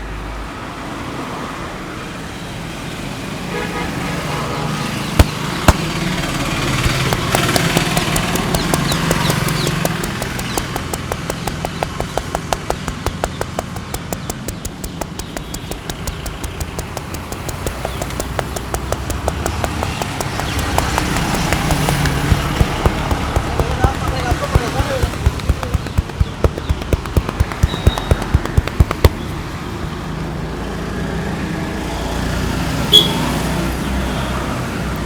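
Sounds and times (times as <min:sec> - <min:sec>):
rapid hand slaps on head: 0:05.2 - 0:06.0, 0:06.8 - 0:29.3
sharp snaps: 0:05.2 - 0:06.0, 0:06.6 - 0:29.4.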